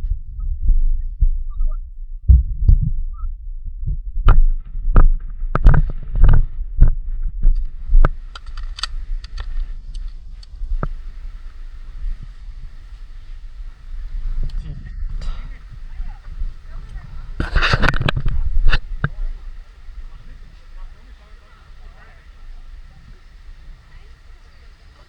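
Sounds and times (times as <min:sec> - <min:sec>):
steady low rumble: 0:00.0 - 0:25.0
thumps and sharp clicks: 0:04.3 - 0:12.2.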